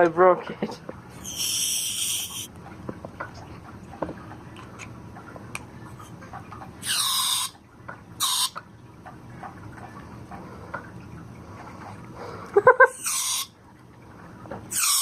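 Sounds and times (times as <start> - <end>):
air horn hissing spurts: 1.2 - 2.5.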